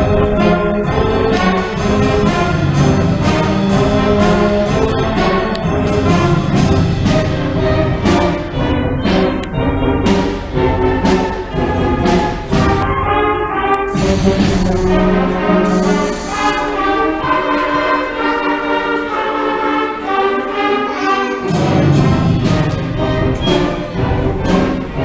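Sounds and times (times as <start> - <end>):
concert band playing: 0.0 - 19.0.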